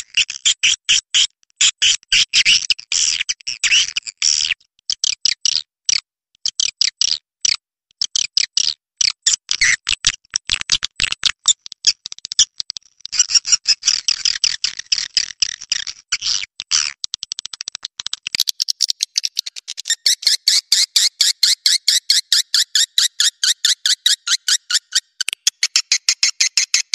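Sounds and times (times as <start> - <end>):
swiftlet chirps and clicks: 17.1 - 20.4.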